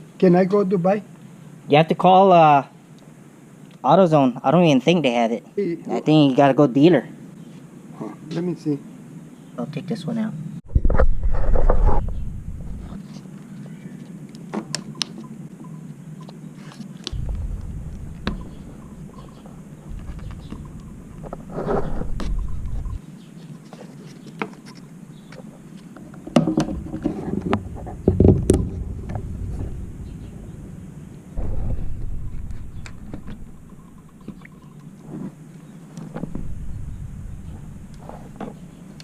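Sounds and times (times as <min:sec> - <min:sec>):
scraping and rustling: 0:16.5 - 0:39.0.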